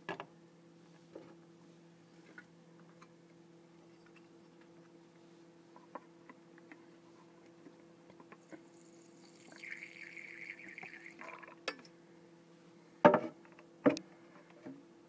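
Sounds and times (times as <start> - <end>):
lighter fluid hissing stream: 8.1 - 11.5.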